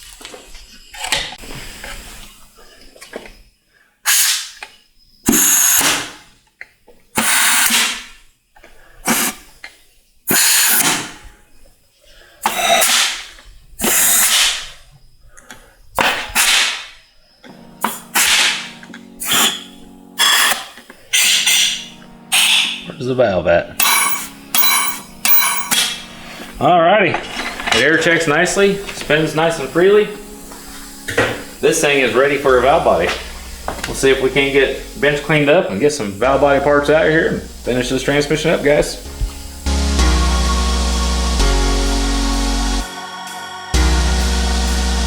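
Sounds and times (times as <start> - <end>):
compressed air blow gun hissing: 4.1 - 4.6, 5.3 - 6.2, 7.2 - 8.1, 9.0 - 9.5, 10.3 - 11.3, 12.4 - 14.8, 16.0 - 16.9, 17.8 - 22.9, 23.8 - 26.6, 28.6 - 42.1.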